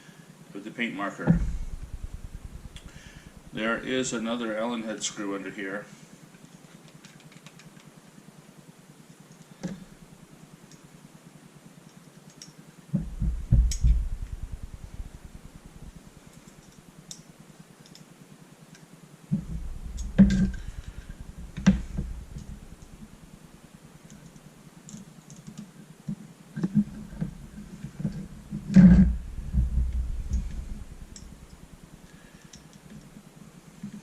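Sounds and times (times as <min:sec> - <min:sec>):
low rumbling handling noise: 0:01.2 - 0:04.2, 0:13.0 - 0:17.0, 0:19.3 - 0:24.4, 0:26.6 - 0:32.3.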